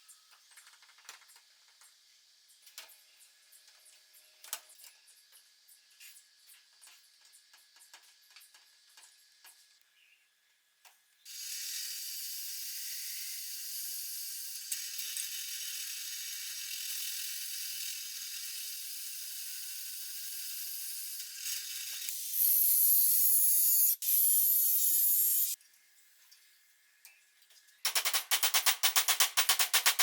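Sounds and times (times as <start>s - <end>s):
angle grinder cutting wood: 20.6s - 25.6s.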